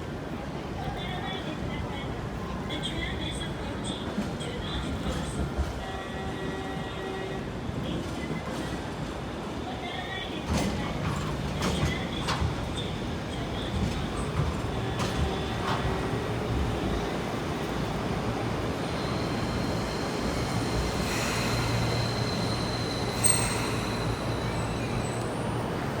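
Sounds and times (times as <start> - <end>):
train rumbling: 1.1 - 26.0
high steady squeal: 19.0 - 25.5.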